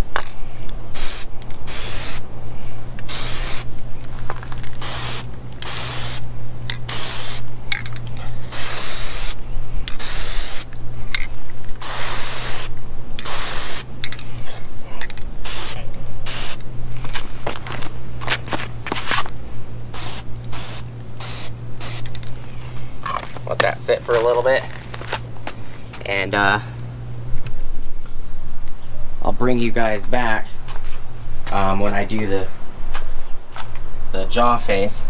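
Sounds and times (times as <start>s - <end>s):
spray paint hissing bursts: 0.9s - 2.3s, 3.0s - 3.8s, 4.6s - 7.8s, 8.4s - 10.8s, 11.7s - 14.2s, 15.4s - 16.6s, 19.9s - 22.2s.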